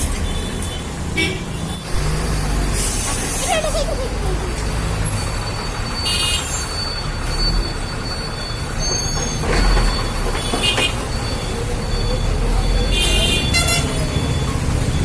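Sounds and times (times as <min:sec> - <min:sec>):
road traffic rumble: 0:00.0 - 0:15.0
vehicle horn tooting: 0:12.9 - 0:14.0.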